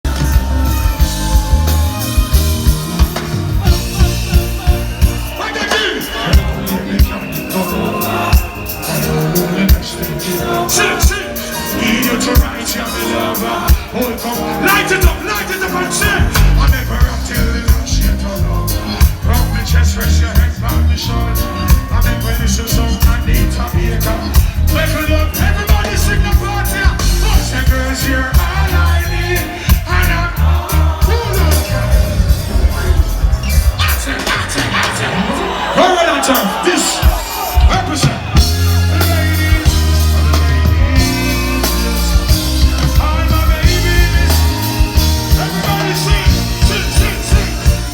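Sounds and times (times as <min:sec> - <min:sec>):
heavy pulsing bass line: 0:00.0 - 0:05.4, 0:14.9 - 0:34.1, 0:38.3 - 0:47.9
live reggae music: 0:00.0 - 0:47.9.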